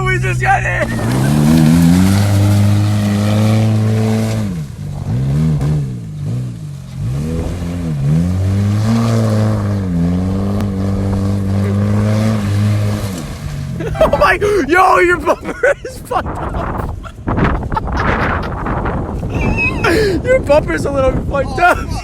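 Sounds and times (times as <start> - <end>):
car engine revving: 0.0 - 15.3.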